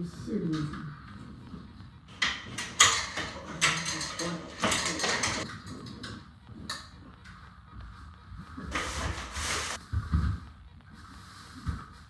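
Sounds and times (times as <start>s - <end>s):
cable sheathing scraping and rustling: 2.1s - 6.1s, 8.5s - 9.8s.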